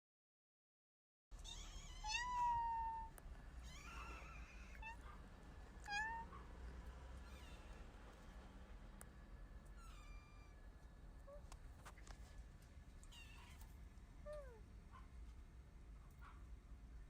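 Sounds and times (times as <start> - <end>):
cat meowing: 1.4 - 5.0, 5.8 - 6.4, 9.8 - 10.6, 13.0 - 13.6.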